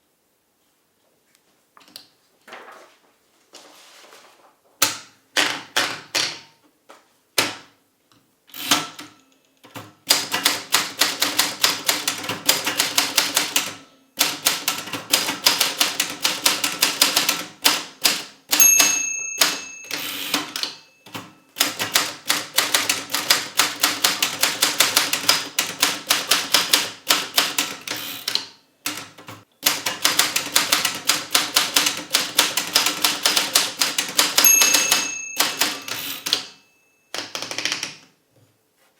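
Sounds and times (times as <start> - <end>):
typewriter bell ringing: 18.6 - 21.8, 34.3 - 37.7
typewriter keys striking: 18.8 - 36.5.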